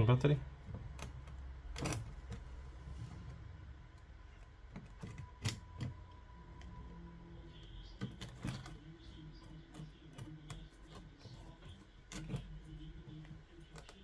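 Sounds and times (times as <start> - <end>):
low steady hum: 0.0 - 14.0
plastic parts clicking and knocking: 0.6 - 2.5, 4.2 - 6.7, 7.9 - 8.8.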